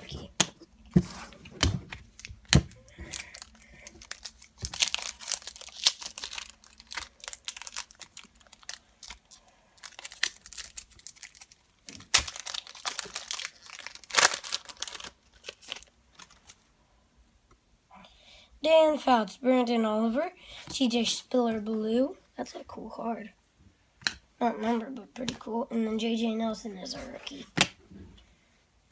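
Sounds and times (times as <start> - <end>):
foil wrapper tearing and crinkling: 2.1 - 16.6.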